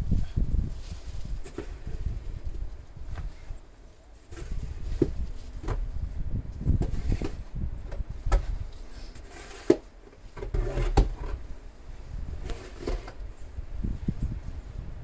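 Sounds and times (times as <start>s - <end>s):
shovel scraping snow: 4.3s - 4.9s, 9.0s - 9.8s, 10.4s - 11.4s, 12.4s - 13.2s
snow shovel knocks and thuds: 4.3s - 5.9s.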